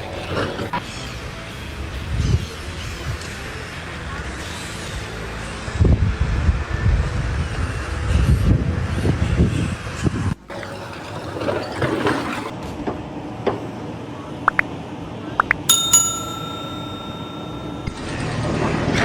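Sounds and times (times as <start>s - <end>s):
bright metallic ring: 15.7s - 18.2s.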